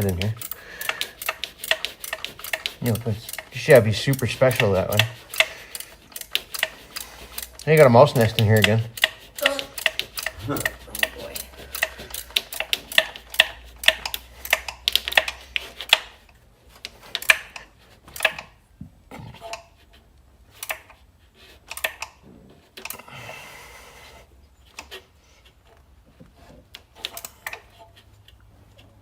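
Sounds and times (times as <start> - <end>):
hand tools clicking: 0.0 - 16.2, 16.8 - 18.5.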